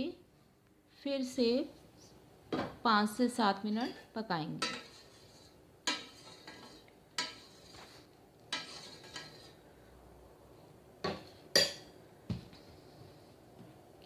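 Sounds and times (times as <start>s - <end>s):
metal kitchenware clinking: 4.6s - 5.2s, 5.8s - 7.8s, 8.5s - 9.6s, 11.0s - 11.9s.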